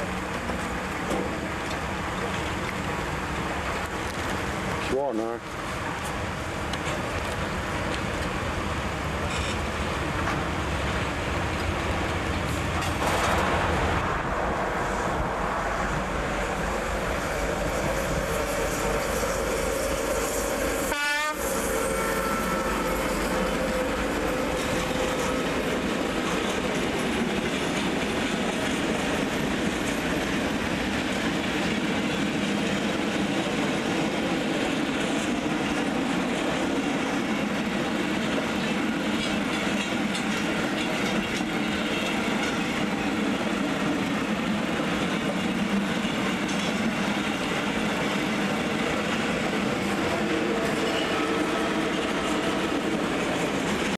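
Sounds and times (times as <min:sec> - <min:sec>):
train running on rails: 0:00.0 - 0:53.9.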